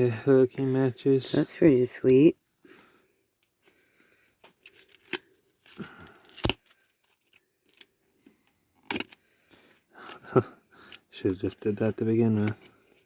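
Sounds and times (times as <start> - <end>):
sharp packaging snap: 6.2 - 6.7.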